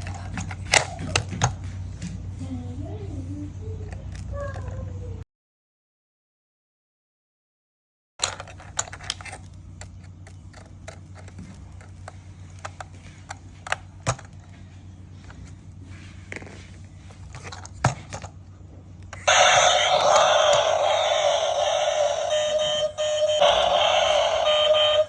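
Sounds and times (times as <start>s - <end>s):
plastic toy parts clicking: 8.2s - 14.4s
steady low hum: 8.2s - 25.0s
loud electronic tune: 19.3s - 25.0s.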